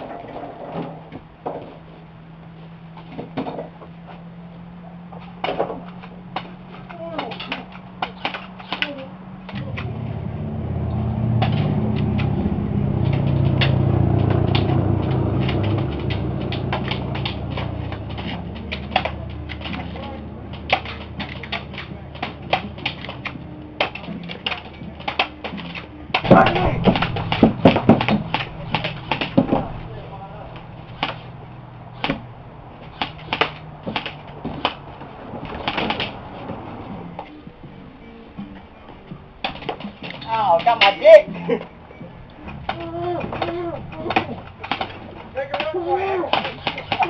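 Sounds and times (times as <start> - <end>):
low hum: 0.0 - 40.0
airsoft guns firing: 20.6 - 29.9.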